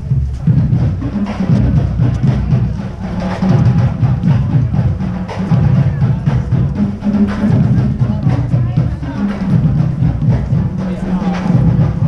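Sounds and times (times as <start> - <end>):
low bass drum beats: 0.0 - 12.0
rapid snare drum strokes: 0.0 - 12.0.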